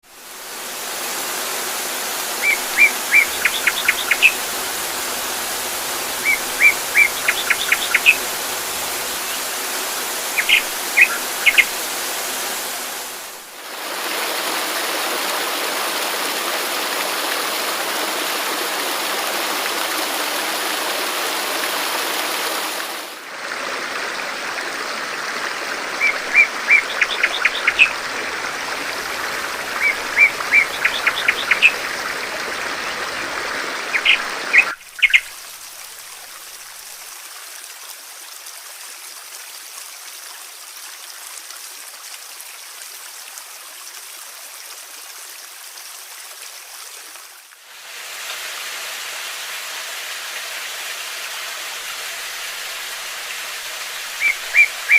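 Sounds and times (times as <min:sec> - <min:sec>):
rushing water: 0:00.0 - 0:54.9
songbird singing: 0:02.2 - 0:13.3, 0:26.0 - 0:35.3, 0:54.0 - 0:54.9.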